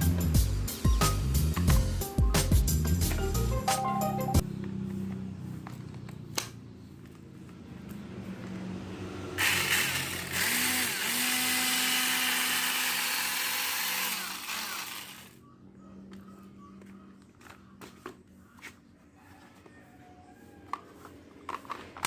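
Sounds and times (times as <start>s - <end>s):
electric chainsaw humming: 9.3s - 15.4s
chainsaw cutting: 9.4s - 15.4s.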